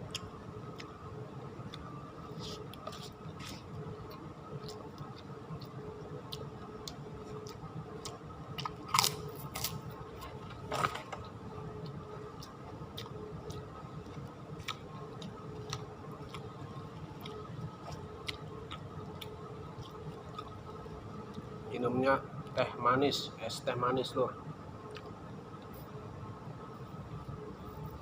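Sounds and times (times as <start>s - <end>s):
person chewing food: 0.0s - 1.0s, 1.6s - 11.2s, 11.8s - 21.5s
crunchy bites: 3.4s - 11.2s.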